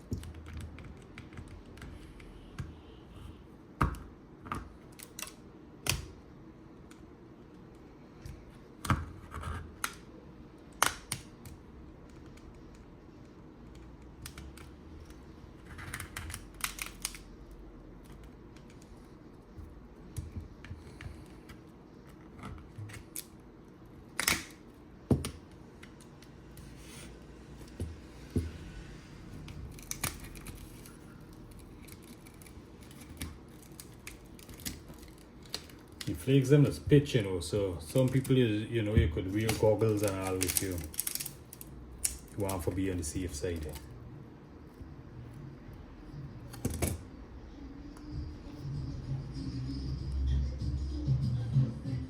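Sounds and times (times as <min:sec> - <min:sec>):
glass cracking: 0:39.5 - 0:41.4.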